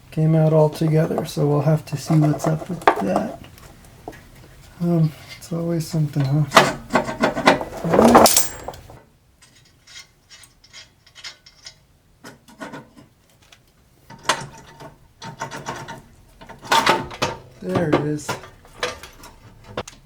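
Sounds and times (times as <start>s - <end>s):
metal parts knocking: 7.0s - 8.9s.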